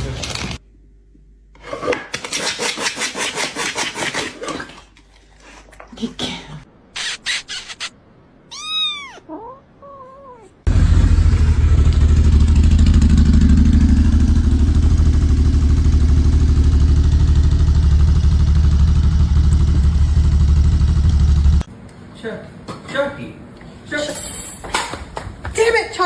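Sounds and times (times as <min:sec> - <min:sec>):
cat meowing: 0:08.5 - 0:10.7.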